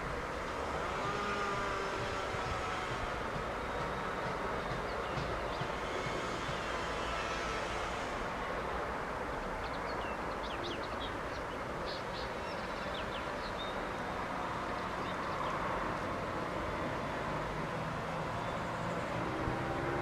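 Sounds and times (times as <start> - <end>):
steady background noise: 0.0 - 20.0
small birds chirping: 9.6 - 15.7.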